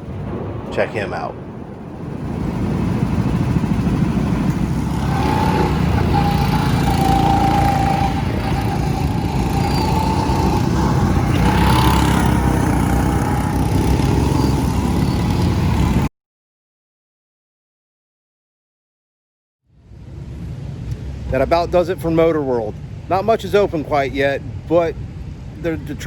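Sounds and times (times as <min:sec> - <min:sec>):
go-kart engine rumbling: 0:00.0 - 0:16.1
wavering whine: 0:00.0 - 0:16.1.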